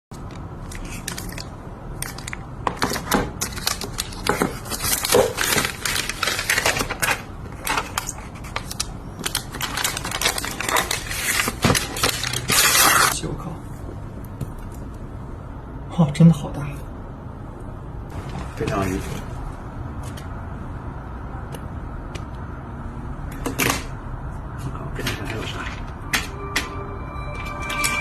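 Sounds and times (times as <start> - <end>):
packaging clicks and crinkles: 0.3 - 13.1.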